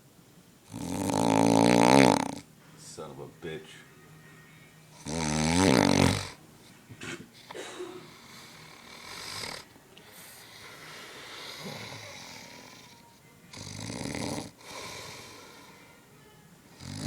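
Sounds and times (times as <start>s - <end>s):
man snoring: 0.7s - 2.5s, 5.0s - 6.4s, 8.0s - 9.7s, 10.4s - 15.7s, 16.8s - 17.0s.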